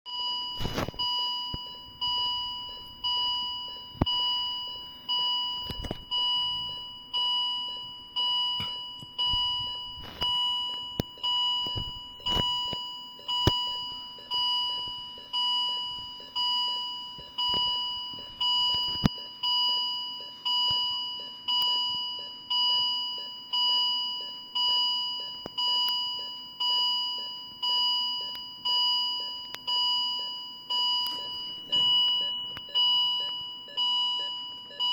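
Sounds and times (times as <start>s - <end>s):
patient monitor alarm beeping: 0.1s - 34.9s.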